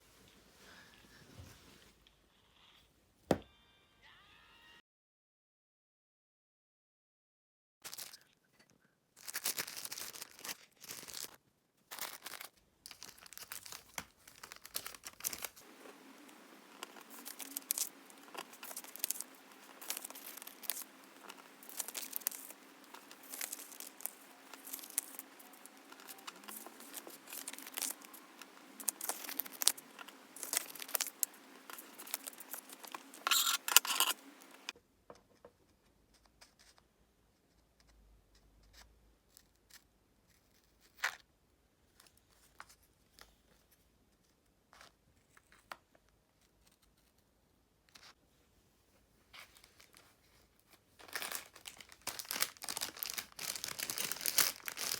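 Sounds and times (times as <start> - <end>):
plastic packaging crinkling: 7.9 - 8.4, 9.2 - 34.7, 51.0 - 54.9
packaging tearing and peeling: 9.2 - 34.7, 51.0 - 54.9
faint steady hum: 15.5 - 35.0.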